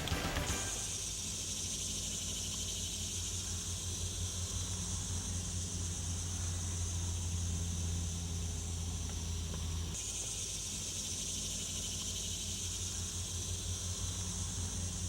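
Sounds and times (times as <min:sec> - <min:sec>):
low mechanical hum: 0:00.0 - 0:15.0
high insect-like drone: 0:09.9 - 0:15.0.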